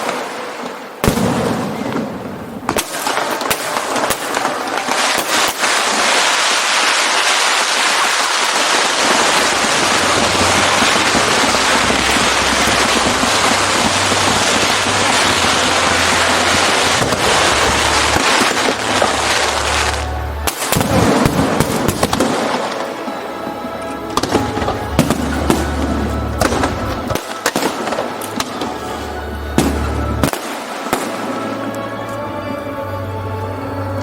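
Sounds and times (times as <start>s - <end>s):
firework bangs: 0.0s - 31.8s
fireworks crackling: 0.0s - 34.0s.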